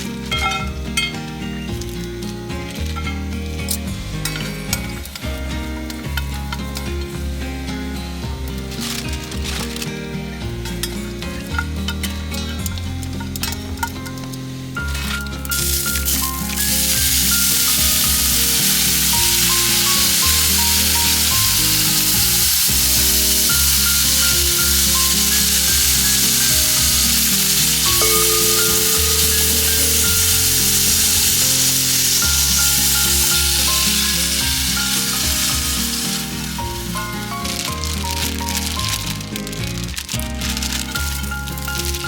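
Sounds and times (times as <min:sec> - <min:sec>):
food sizzling in a pan: 0:10.8 - 0:42.0.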